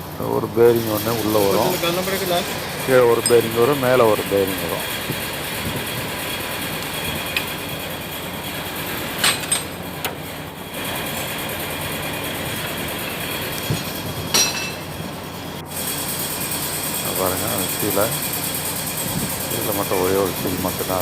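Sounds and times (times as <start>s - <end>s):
workshop hum: 0.0s - 21.0s
metal parts clinking: 9.2s - 9.8s, 14.3s - 14.8s.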